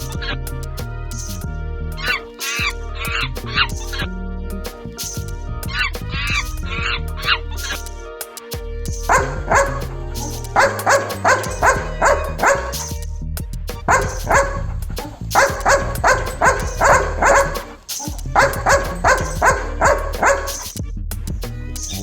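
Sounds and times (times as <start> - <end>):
background music: 0.0 - 22.0
dog barking: 9.1 - 13.0, 13.9 - 20.7.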